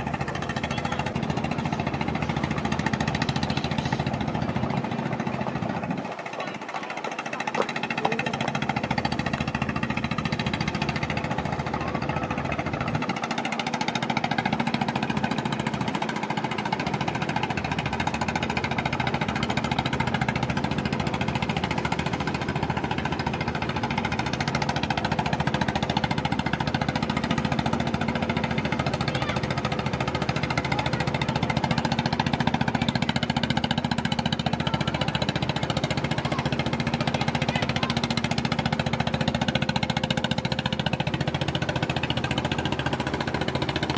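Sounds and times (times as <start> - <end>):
boat engine chugging: 0.0 - 43.9.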